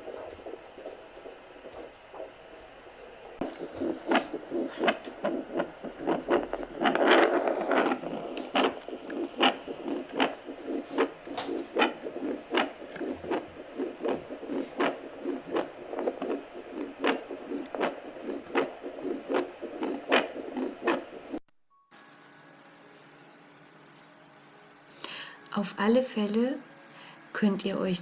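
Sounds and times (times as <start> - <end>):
doppler heartbeat pulsing: 0.0 - 21.4.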